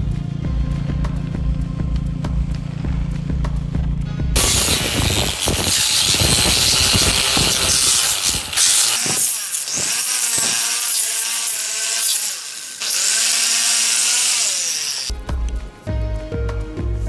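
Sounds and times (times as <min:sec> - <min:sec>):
power tool grinding: 0:04.4 - 0:15.2.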